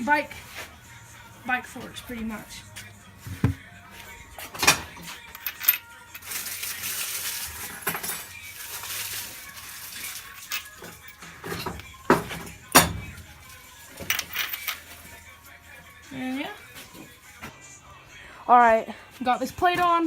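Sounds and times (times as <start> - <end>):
metal parts clinking: 4.6 - 11.2, 13.9 - 15.0
rustling handling noise: 5.3 - 11.1.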